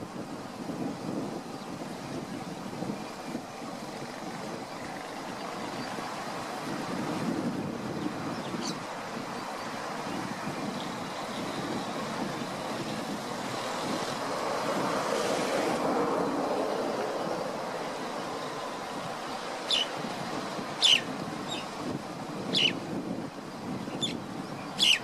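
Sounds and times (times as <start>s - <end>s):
rushing water: 0.0s - 25.0s
wind: 0.0s - 25.0s
bird chirping: 8.0s - 11.5s, 19.6s - 20.1s, 20.8s - 21.8s, 22.5s - 22.8s, 23.8s - 25.0s.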